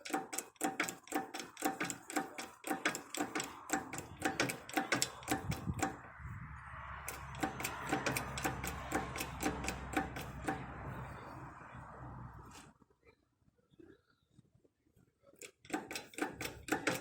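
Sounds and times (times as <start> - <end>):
rapid mechanical clicking: 0.0 - 6.0, 7.0 - 11.2, 15.4 - 17.0.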